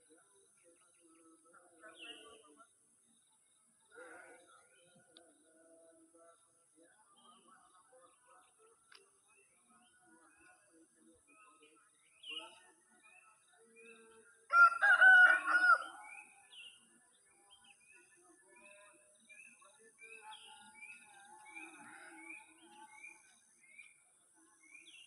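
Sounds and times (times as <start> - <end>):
rooster crowing: 14.5 - 16.0.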